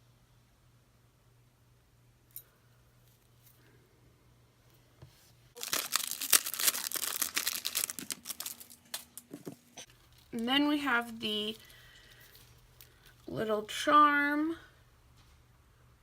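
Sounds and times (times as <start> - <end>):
packaging crinkling: 5.6 - 10.4.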